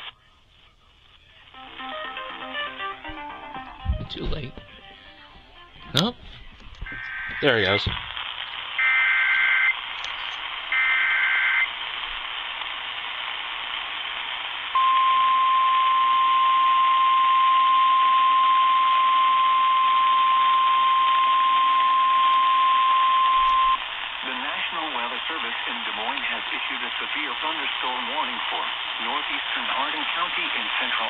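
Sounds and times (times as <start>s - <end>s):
radio static: 0.0s - 1.9s, 6.8s - 14.9s, 19.3s - 31.0s.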